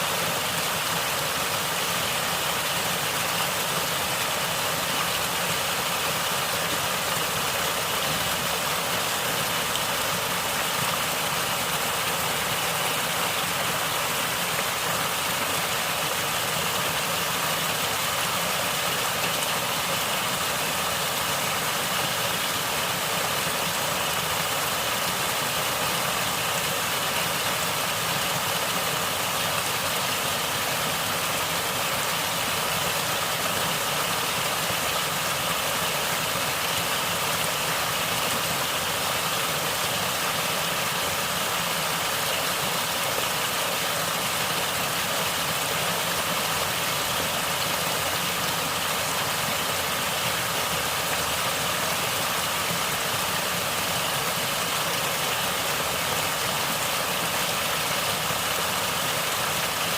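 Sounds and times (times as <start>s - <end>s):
water gurgling and flowing: 0.0s - 59.9s.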